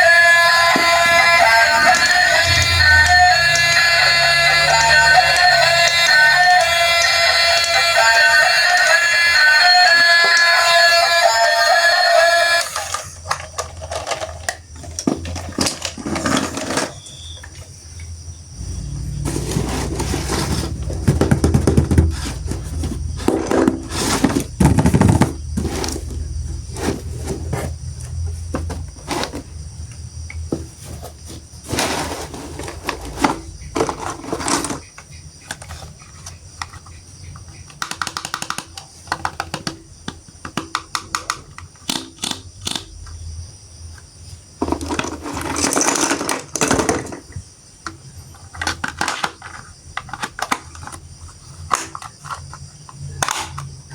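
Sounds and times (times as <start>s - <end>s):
low rumble: 0.7s - 7.8s, 18.5s - 23.9s
plastic toy parts clicking: 12.6s - 16.9s, 33.8s - 43.2s, 48.4s - 51.0s, 51.7s - 53.7s.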